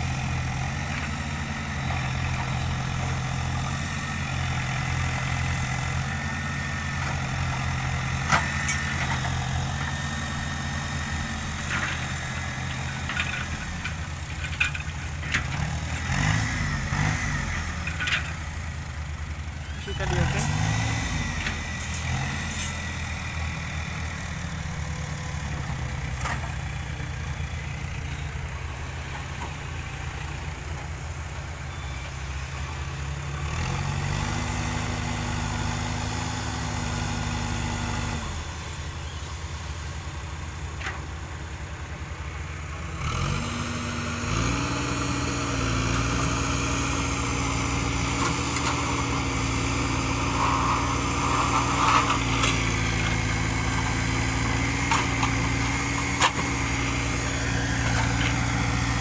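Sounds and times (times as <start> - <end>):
heavy diesel engine revving: 0.0 - 39.5, 42.6 - 59.0.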